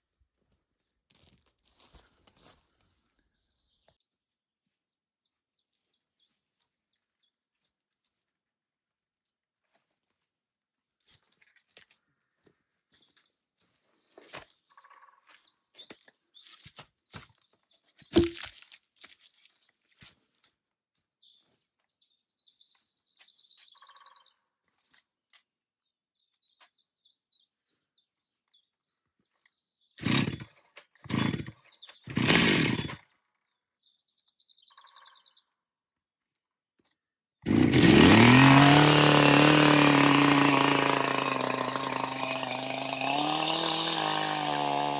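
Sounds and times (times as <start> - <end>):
chainsaw engine running: 30.0 - 33.0, 37.5 - 44.9
chainsaw pull-start bursts: 30.0 - 33.0, 37.5 - 44.9
crunches and clicks: 30.0 - 33.0.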